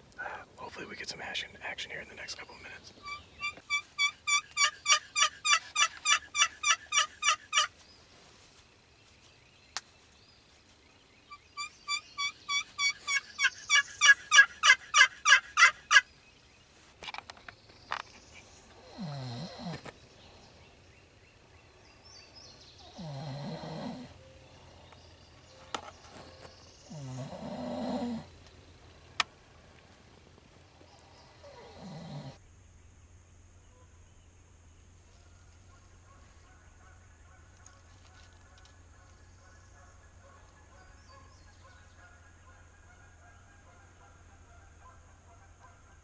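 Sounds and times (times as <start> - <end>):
turkey yelps: 3.0 - 7.7, 11.3 - 16.0
slow snores: 18.8 - 19.8, 22.9 - 24.2, 26.9 - 28.3, 31.5 - 32.4.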